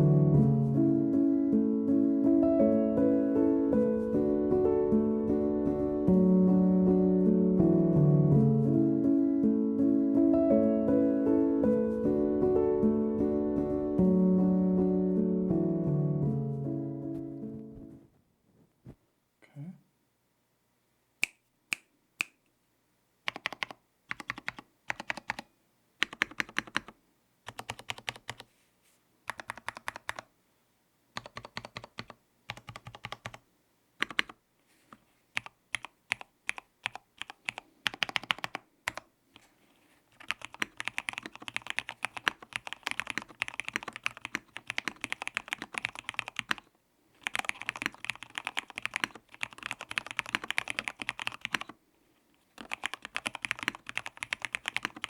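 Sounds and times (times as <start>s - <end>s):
typing on mechanical keyboard: 23.3s - 28.5s, 29.3s - 30.3s, 31.2s - 33.4s, 34.0s - 34.4s, 35.4s - 39.5s, 40.2s - 51.8s, 52.6s - 55.0s.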